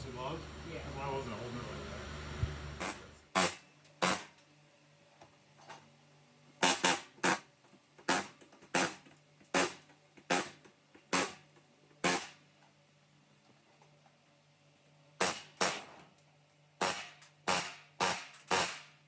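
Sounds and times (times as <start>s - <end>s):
pneumatic air chisel hammering metal: 2.8s - 4.4s, 6.6s - 12.4s, 15.2s - 16.0s, 16.8s - 19.0s.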